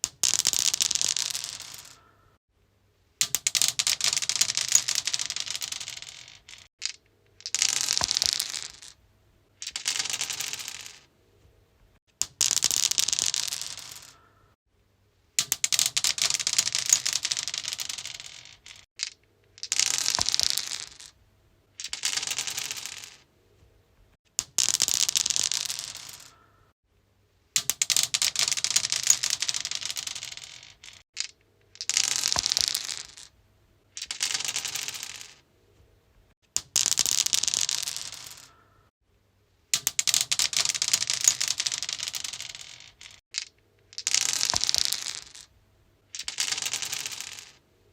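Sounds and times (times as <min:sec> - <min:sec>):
dice clattering on stone: 0:00.0 - 0:02.1, 0:03.2 - 0:09.0, 0:09.6 - 0:11.1, 0:12.2 - 0:14.2, 0:15.4 - 0:21.2, 0:21.8 - 0:23.2, 0:24.3 - 0:26.4, 0:27.6 - 0:35.4, 0:36.6 - 0:38.6, 0:39.8 - 0:45.5, 0:46.1 - 0:47.6.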